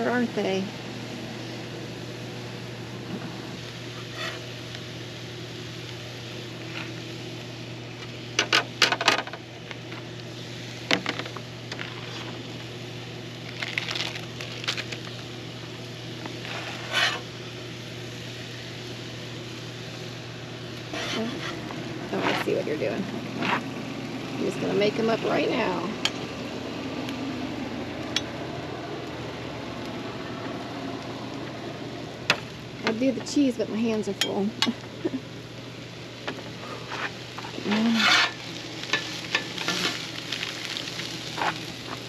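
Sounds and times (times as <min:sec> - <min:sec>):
steady low hum: 0:00.0 - 0:42.0
metal tools scraping on griddle: 0:03.1 - 0:04.6, 0:11.7 - 0:12.4, 0:16.4 - 0:17.3, 0:20.8 - 0:23.7, 0:36.7 - 0:40.1, 0:41.3 - 0:42.0.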